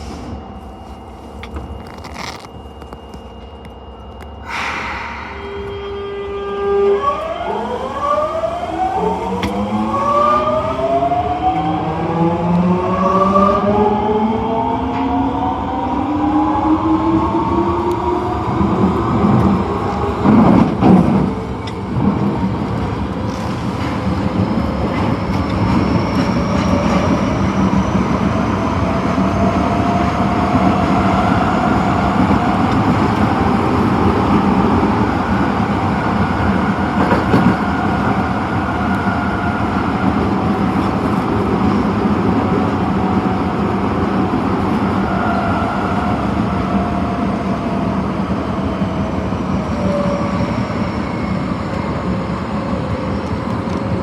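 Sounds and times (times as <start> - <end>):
subway train rumble: 0.0 - 54.0.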